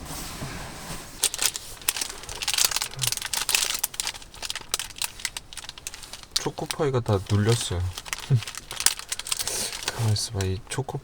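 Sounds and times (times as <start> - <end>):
plastic wrapper crinkling: 1.1 - 11.0.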